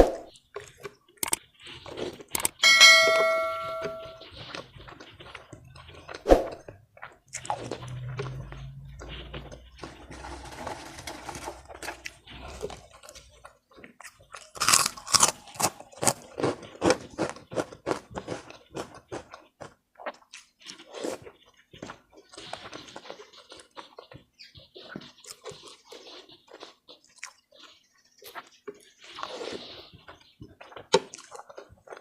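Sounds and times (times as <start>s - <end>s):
person chewing food: 0.3s - 2.6s, 4.4s - 10.4s, 11.3s - 32.0s
crunchy bites: 11.7s - 21.2s.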